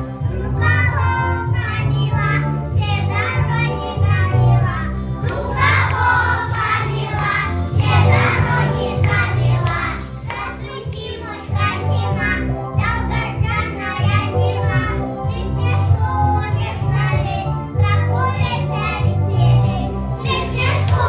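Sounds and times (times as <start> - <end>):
backing track with steady bass: 0.0 - 21.0
children singing: 0.0 - 21.0
tinkling metal shaker: 4.9 - 11.5, 20.2 - 21.0.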